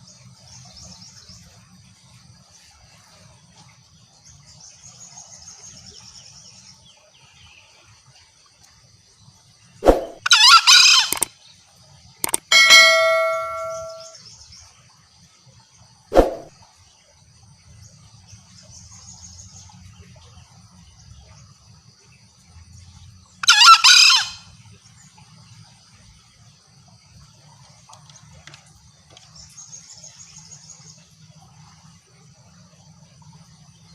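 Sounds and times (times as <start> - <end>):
junglefowl harsh calls: 10.2 - 11.3, 23.4 - 24.4
sharp strike with bell-like ring: 12.4 - 14.2.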